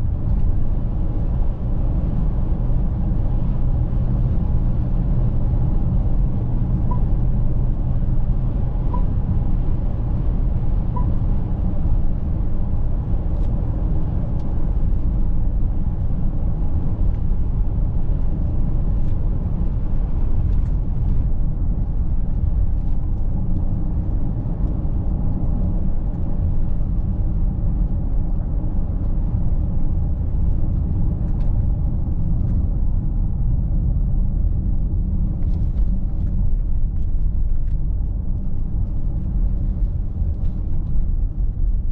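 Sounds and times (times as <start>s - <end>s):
car road and drive rumble: 0.0s - 41.9s
faint short beeps: 6.9s - 7.2s.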